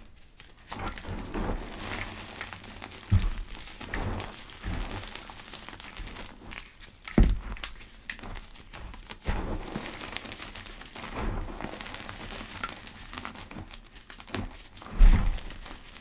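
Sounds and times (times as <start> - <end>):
dull thuds: 3.0 - 5.3, 7.2 - 7.6.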